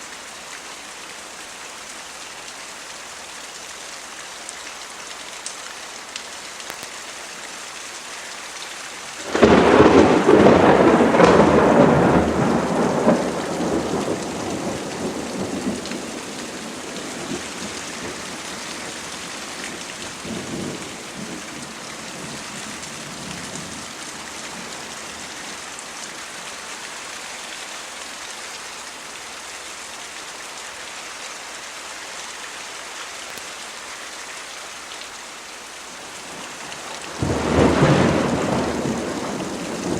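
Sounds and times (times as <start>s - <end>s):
steady rain falling: 0.0s - 39.9s
thunderclap: 9.2s - 18.2s, 37.1s - 39.9s
rumble of thunder: 9.2s - 18.6s, 37.0s - 39.9s.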